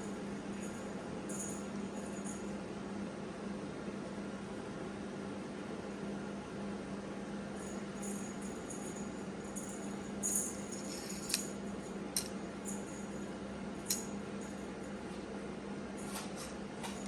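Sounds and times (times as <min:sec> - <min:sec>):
small jingle bell jingling: 0:00.6 - 0:02.5, 0:07.6 - 0:14.7
steady low hum: 0:07.6 - 0:16.0.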